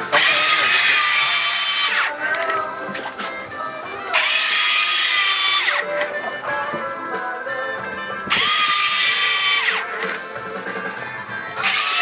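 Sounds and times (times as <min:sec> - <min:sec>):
fishing reel motor whine: 0:00.0 - 0:02.6, 0:04.0 - 0:06.2, 0:08.3 - 0:10.2, 0:11.6 - 0:12.0.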